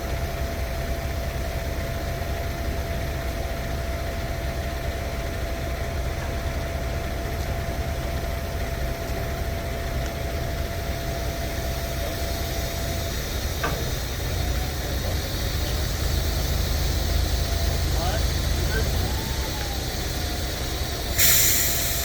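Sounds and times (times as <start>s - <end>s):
vehicle engine idling: 0.0s - 22.0s
thin steady whine: 7.7s - 22.0s.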